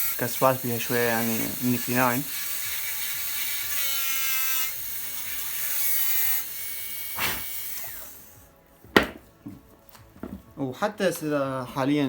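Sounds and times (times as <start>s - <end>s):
dental drill whining: 0.0s - 8.5s
air hiss: 7.0s - 8.4s
light knock: 8.9s - 9.2s.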